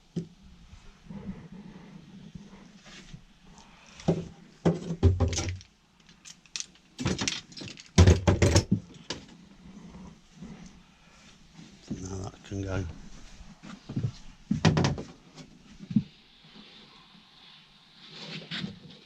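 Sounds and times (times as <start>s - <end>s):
clattering and knocking: 4.0s - 5.7s, 6.5s - 9.3s, 14.5s - 15.2s.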